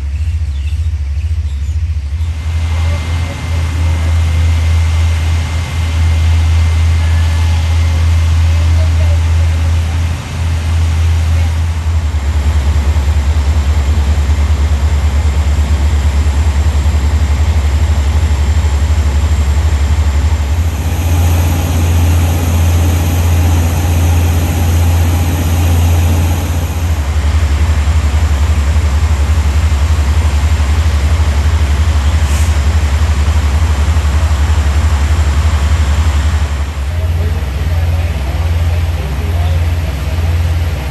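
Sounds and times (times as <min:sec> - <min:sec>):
fire engines running: 0:00.0 - 0:40.9
high hiss: 0:20.3 - 0:36.9.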